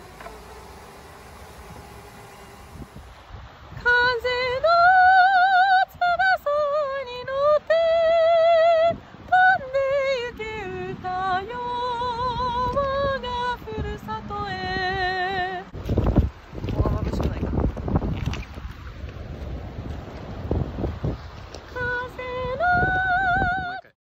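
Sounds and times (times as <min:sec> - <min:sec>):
woman singing with vibrato: 0:00.0 - 0:15.8, 0:21.7 - 0:23.9
faint background hiss: 0:00.0 - 0:17.6.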